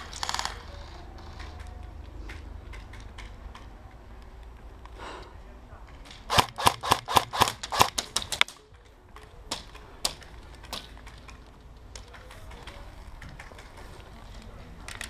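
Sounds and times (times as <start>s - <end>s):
airsoft gun shots: 6.3s - 8.4s.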